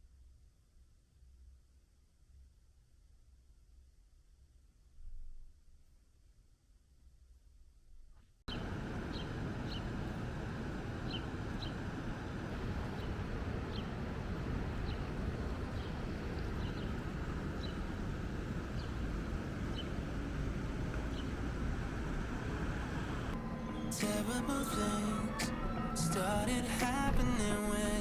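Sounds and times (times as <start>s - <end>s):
rushing outdoor background noise: 8.5s - 28.0s.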